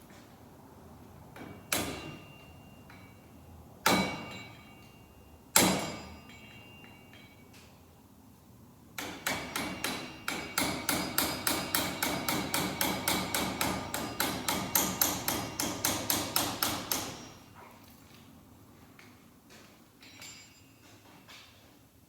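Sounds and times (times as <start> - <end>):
hammer striking metal: 3.8 - 4.9, 9.0 - 17.4.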